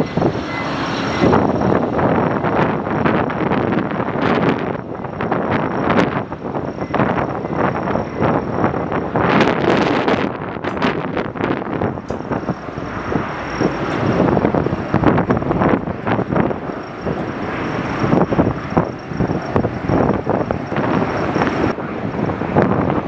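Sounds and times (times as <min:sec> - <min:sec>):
gusting wind buffeting microphone: 0:00.0 - 0:23.0.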